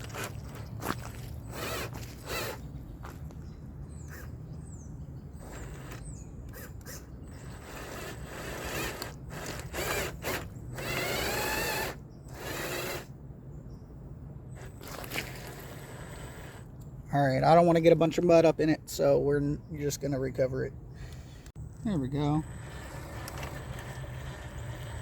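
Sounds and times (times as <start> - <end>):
wheels spinning: 0.0 - 13.1, 22.2 - 25.0
electric motor and gears whining: 0.0 - 13.2, 14.5 - 16.9, 21.0 - 25.0.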